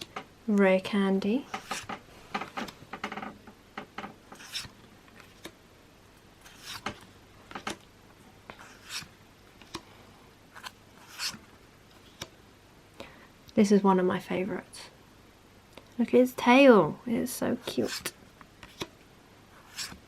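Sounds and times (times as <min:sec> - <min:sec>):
trading cards sliding: 0:01.6 - 0:01.9, 0:04.3 - 0:05.5, 0:06.4 - 0:07.7, 0:08.5 - 0:09.9, 0:10.5 - 0:12.3, 0:19.6 - 0:20.0.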